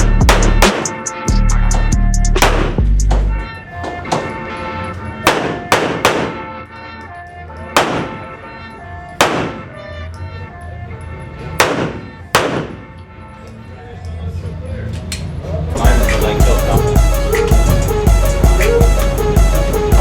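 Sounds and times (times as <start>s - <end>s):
background music with steady tones: 0.0s - 20.0s
handgun shots: 2.4s - 2.8s, 5.3s - 6.4s, 7.8s - 8.3s, 9.2s - 9.7s, 11.6s - 12.8s.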